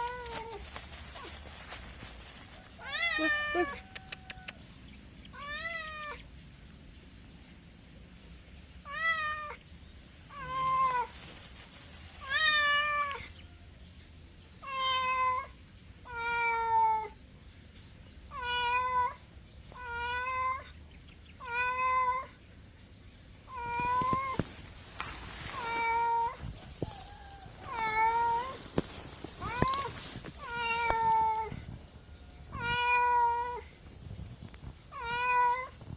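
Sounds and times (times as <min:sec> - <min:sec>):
cat meowing: 0:02.8 - 0:04.6, 0:23.5 - 0:24.4, 0:25.5 - 0:31.6, 0:32.5 - 0:33.7.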